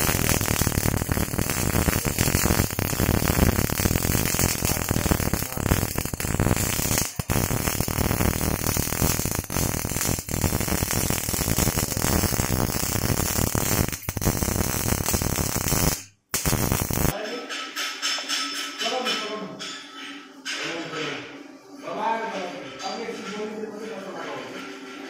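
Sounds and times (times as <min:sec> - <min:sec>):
welding arc crackling: 0:00.0 - 0:17.2.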